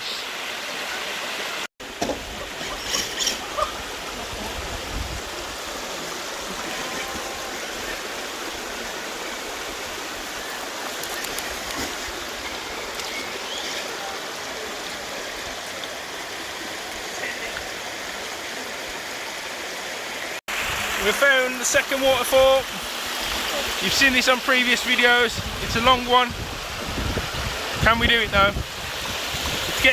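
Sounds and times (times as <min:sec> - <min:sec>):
creek water running over rocks: 0:00.0 - 0:29.9
short knocks or splashes: 0:01.8 - 0:03.4.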